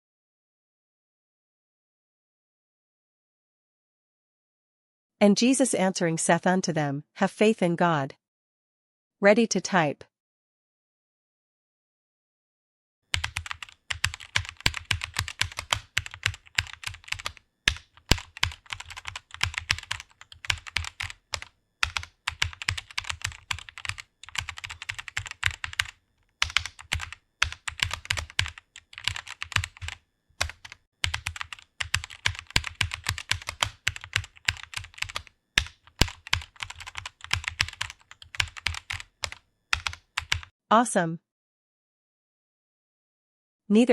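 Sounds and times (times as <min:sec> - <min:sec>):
rapid keyboard typing: 0:13.1 - 0:40.5.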